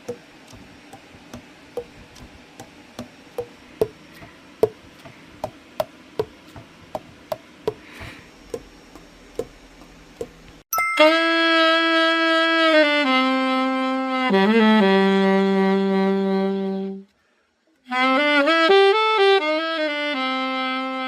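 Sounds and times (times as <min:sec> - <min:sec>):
saxophone key pads popping: 0:00.0 - 0:10.5.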